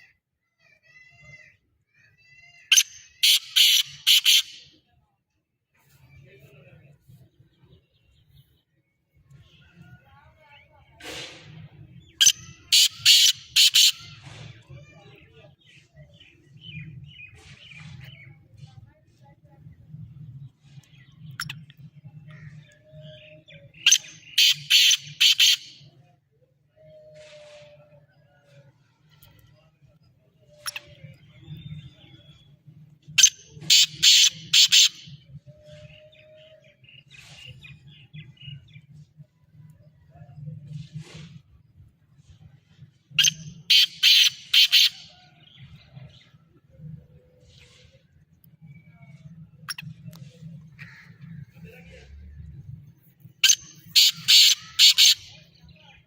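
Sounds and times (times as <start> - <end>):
bird giving harsh call: 2.6 - 4.7, 12.2 - 14.6, 23.8 - 25.9, 33.2 - 35.2, 43.2 - 45.2, 53.4 - 55.6
francolin calling loud notes: 53.4 - 55.5.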